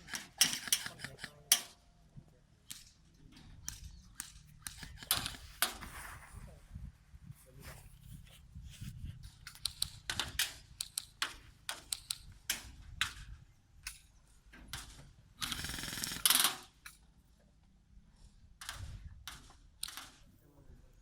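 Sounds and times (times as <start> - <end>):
airsoft guns firing: 0.0 - 1.8, 3.7 - 5.8, 14.7 - 16.9.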